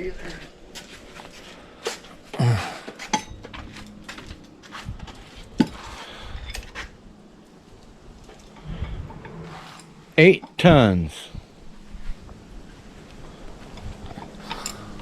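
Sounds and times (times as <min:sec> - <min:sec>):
metal tools clanking: 0:03.0 - 0:04.5, 0:13.7 - 0:15.0.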